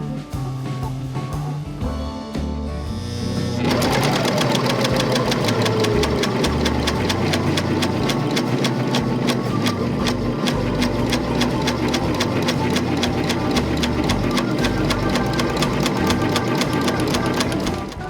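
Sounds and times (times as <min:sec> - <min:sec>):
background music: 0:00.0 - 0:18.0
overlock sewing machine clatter: 0:03.7 - 0:18.0.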